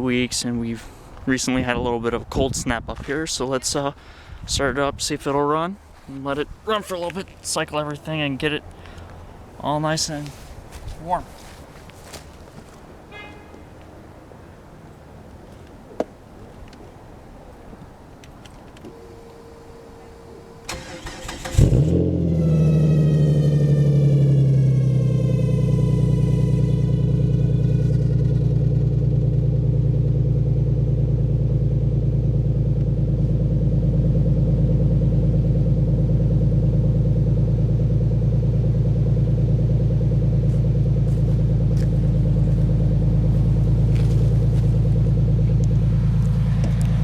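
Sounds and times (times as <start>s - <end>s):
car engine idling: 18.7s - 47.0s.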